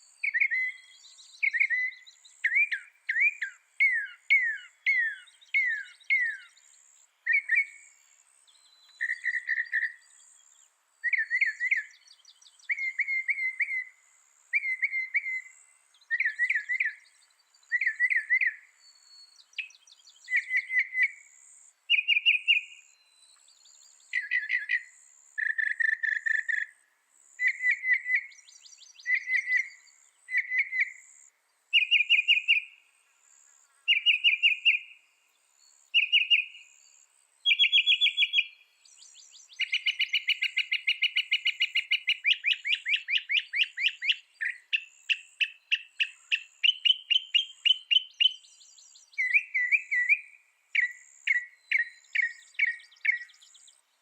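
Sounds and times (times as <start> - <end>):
mockingbird chirping: 0.2 - 7.8, 8.6 - 10.2, 21.9 - 22.8, 23.6 - 35.0, 35.9 - 36.7, 37.4 - 53.8.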